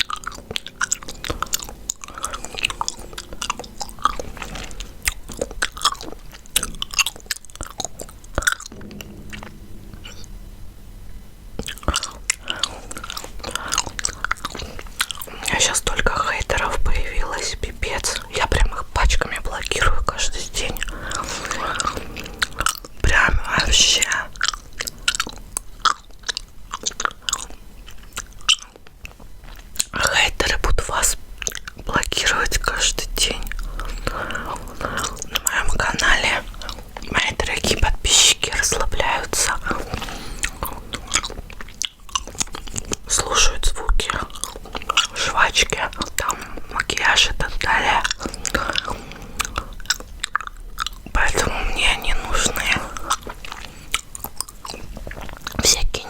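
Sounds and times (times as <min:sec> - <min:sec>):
gum chewing mouth smacks: 0:00.0 - 0:08.7, 0:38.5 - 0:56.0
gum chewing: 0:00.0 - 0:08.8, 0:11.6 - 0:56.0.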